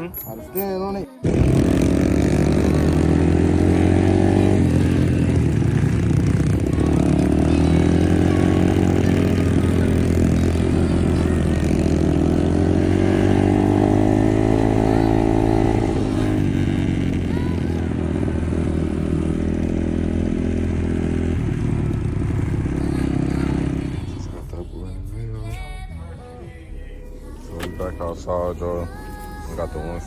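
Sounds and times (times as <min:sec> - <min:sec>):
dirt bike engine revving: 0:01.2 - 0:24.3.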